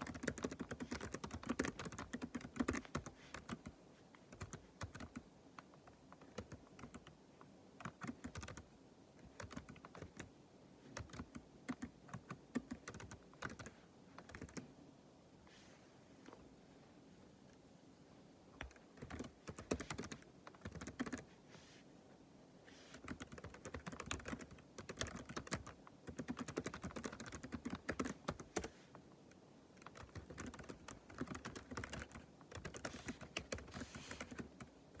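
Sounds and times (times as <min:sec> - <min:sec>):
typing on keyboard: 0:00.0 - 0:03.7, 0:04.3 - 0:07.2, 0:07.8 - 0:10.3, 0:10.9 - 0:14.7, 0:18.6 - 0:21.3, 0:22.9 - 0:28.8, 0:29.8 - 0:35.0.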